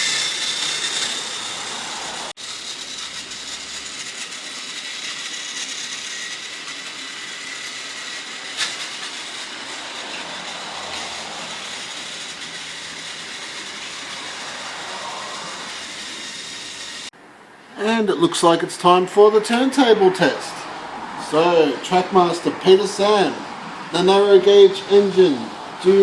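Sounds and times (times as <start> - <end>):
toy train motor whirring: 0.0 - 17.1.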